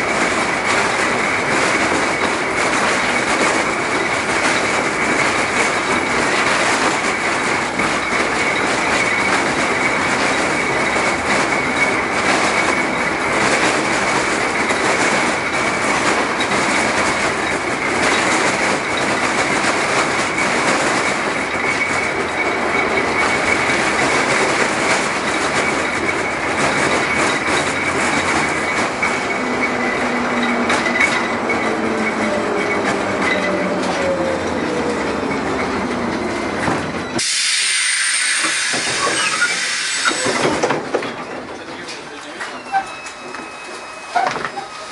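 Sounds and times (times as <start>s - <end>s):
wheels clicking over rail joints: 0.0s - 37.2s, 38.4s - 44.9s
tram rumble and rattle: 0.0s - 44.9s
thin wheel squeal: 37.2s - 40.4s, 42.4s - 44.9s.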